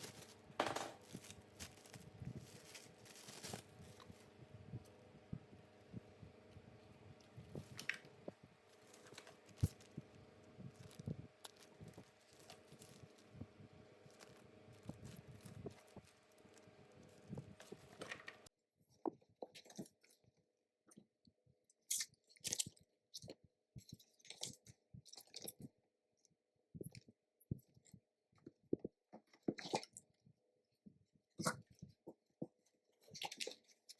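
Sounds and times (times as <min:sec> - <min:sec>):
packaging crinkling and clicking: 0:00.0 - 0:04.3, 0:07.2 - 0:18.5.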